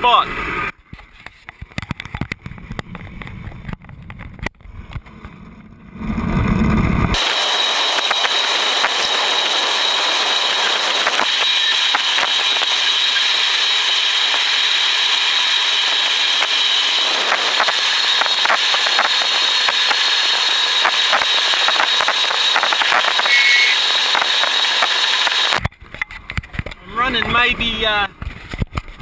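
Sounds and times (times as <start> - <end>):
road and wind noise in car: 0.0 - 13.0
steady high whine: 6.0 - 25.7
scattered clicks: 7.2 - 14.6, 15.2 - 25.6.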